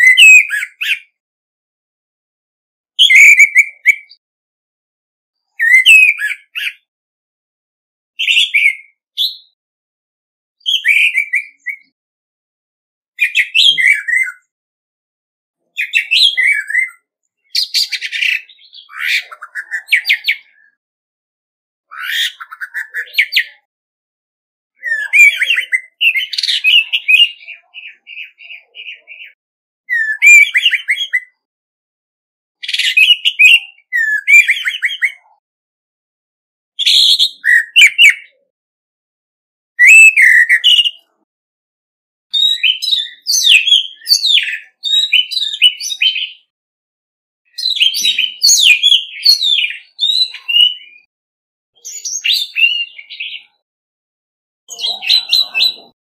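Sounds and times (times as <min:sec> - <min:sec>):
thrush singing whistled phrases: 0:00.0 - 0:01.2, 0:03.0 - 0:04.2, 0:05.5 - 0:06.9, 0:08.2 - 0:09.6, 0:10.6 - 0:12.0, 0:13.2 - 0:14.5, 0:15.6 - 0:20.8, 0:21.9 - 0:23.7, 0:24.8 - 0:31.5, 0:32.6 - 0:35.4, 0:36.8 - 0:38.4, 0:39.8 - 0:41.2, 0:42.3 - 0:46.5, 0:47.5 - 0:51.0, 0:51.8 - 0:53.6, 0:54.7 - 0:56.0.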